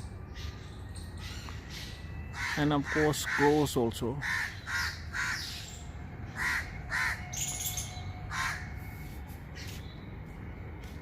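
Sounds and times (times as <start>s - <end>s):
crows cawing: 1.2s - 8.8s.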